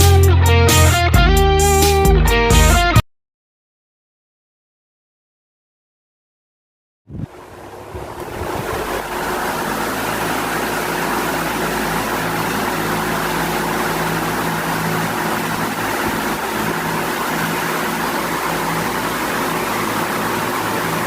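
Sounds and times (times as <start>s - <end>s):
pedestal fan rushing air: 7.1s - 21.0s.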